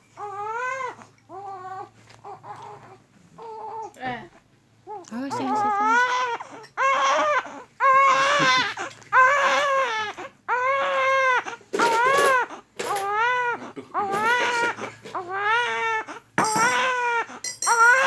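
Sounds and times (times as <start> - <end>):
baby crying: 0.2 - 4.0, 4.9 - 18.0.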